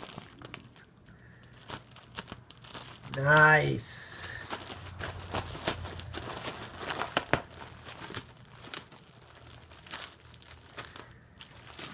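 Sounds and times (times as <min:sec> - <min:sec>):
dog tearing crinkling packaging: 0:00.0 - 0:11.9.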